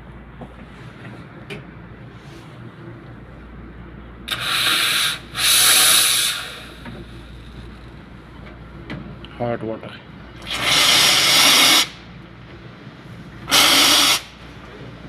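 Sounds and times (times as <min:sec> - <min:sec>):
coffee machine hissing: 0:04.3 - 0:07.8, 0:10.4 - 0:12.1, 0:13.4 - 0:14.7.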